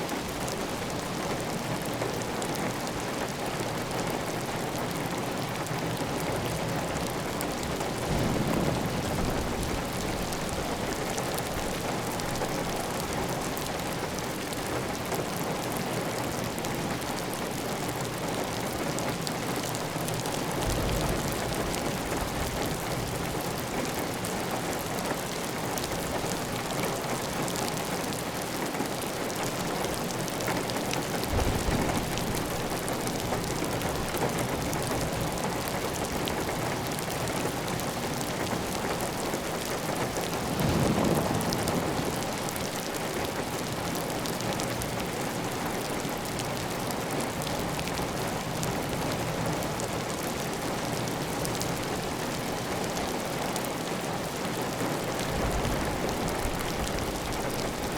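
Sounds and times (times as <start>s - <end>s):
heavy rain on a tiled roof: 0.0s - 57.9s.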